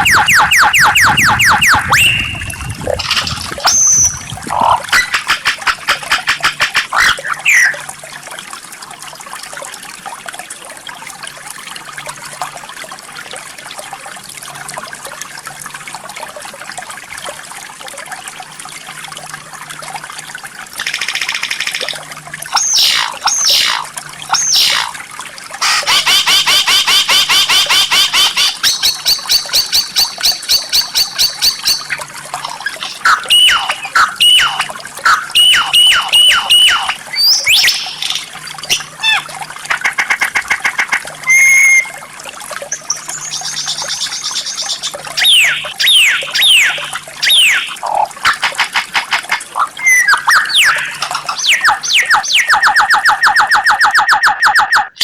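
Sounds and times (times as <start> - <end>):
songbird trilling and whistling: 0.0 - 5.2, 6.9 - 7.8, 28.2 - 39.2, 41.3 - 41.9, 42.9 - 47.8, 49.8 - 55.0.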